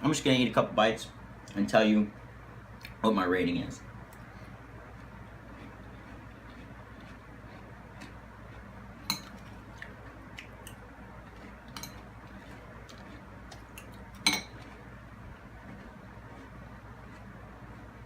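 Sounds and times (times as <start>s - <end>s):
spoon clinking against bowl: 13.8s - 14.6s.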